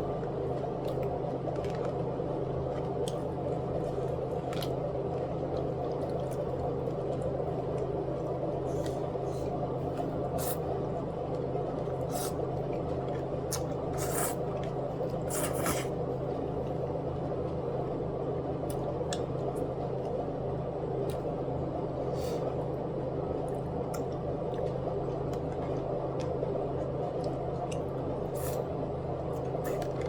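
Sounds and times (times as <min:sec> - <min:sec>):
low household hum: 0:00.0 - 0:30.0
wet chewing sounds: 0:08.6 - 0:16.1.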